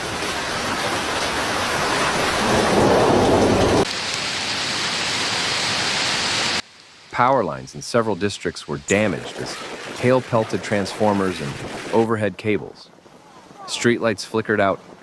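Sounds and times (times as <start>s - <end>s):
hail and rain pelting down: 9.0s - 12.2s.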